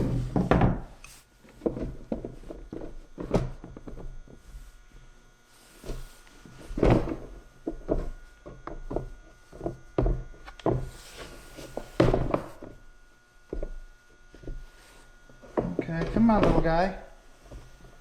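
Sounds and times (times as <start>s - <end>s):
heavy thumps: 5.8s - 18.0s.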